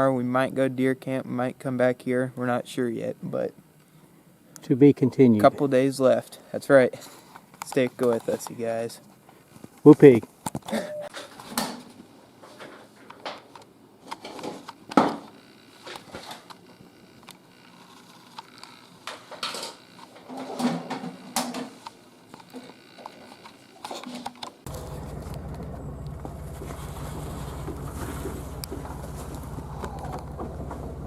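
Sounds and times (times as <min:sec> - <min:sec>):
knocks and rustles: 0:23.9 - 0:31.0
outboard motor running: 0:24.7 - 0:31.0.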